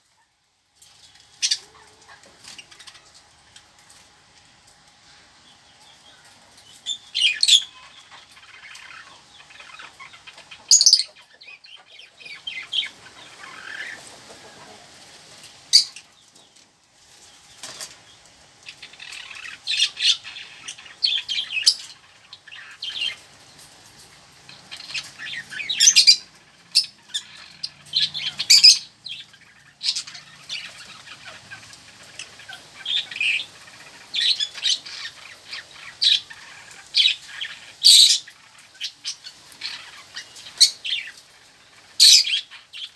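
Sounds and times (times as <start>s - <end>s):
small birds chirping and squawking: 0.0s - 42.9s.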